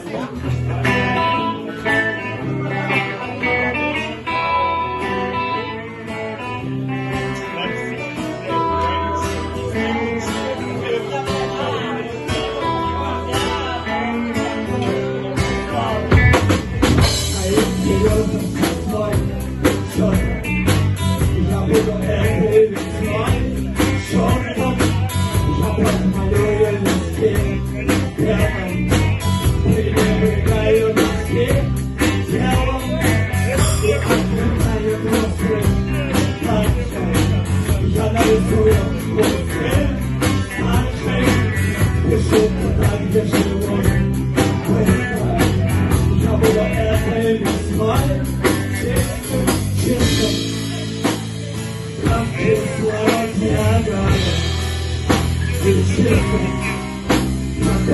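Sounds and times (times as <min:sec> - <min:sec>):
blues guitar and bass: 0:00.0 - 0:57.9
drum kit beat: 0:15.4 - 0:57.9.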